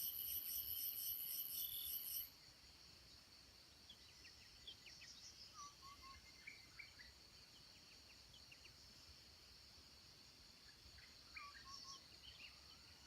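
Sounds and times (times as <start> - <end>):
high insect drone: 0.0 - 3.7.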